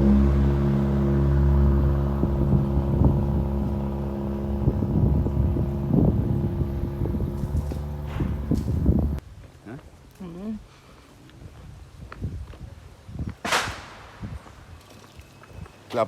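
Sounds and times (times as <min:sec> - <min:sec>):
vehicle engine running: 0:00.0 - 0:09.2.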